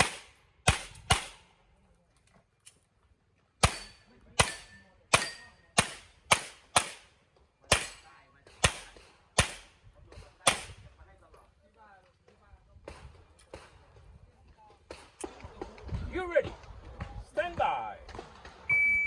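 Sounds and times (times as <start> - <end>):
handgun shots with echo: 0.0 - 1.5, 8.6 - 9.7.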